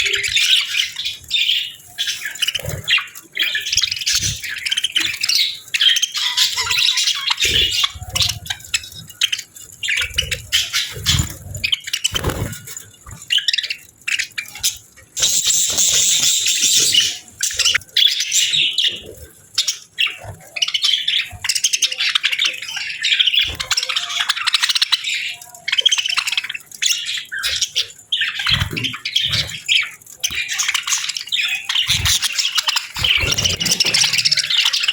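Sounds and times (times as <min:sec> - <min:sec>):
budgerigars chirping and chattering: 0:00.0 - 0:34.9.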